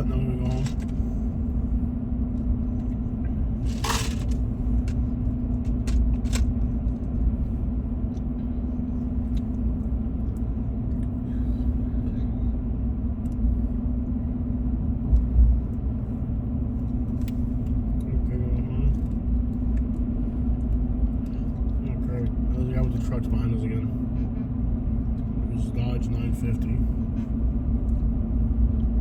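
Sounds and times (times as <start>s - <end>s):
car road and engine drone: 0.0s - 29.0s
low steady hum: 0.0s - 29.0s.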